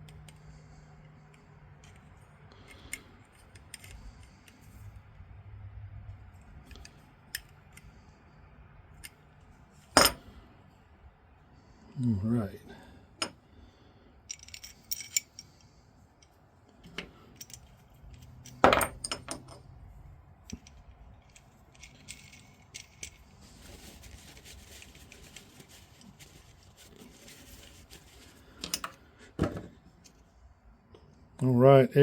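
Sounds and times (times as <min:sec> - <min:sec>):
small metal parts clinking: 0:09.9 - 0:10.3, 0:14.2 - 0:19.7, 0:20.4 - 0:25.4, 0:28.6 - 0:29.0.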